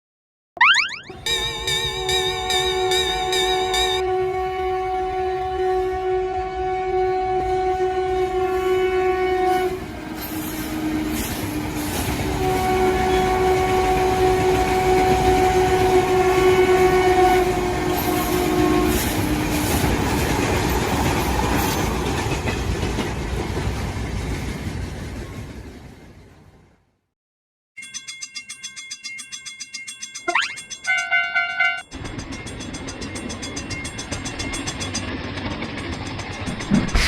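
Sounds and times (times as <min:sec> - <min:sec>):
train horn blasts: 0:01.3 - 0:11.4, 0:12.2 - 0:19.1, 0:30.9 - 0:31.8
train rumble and wheel clatter: 0:01.3 - 0:26.9, 0:31.0 - 0:37.0.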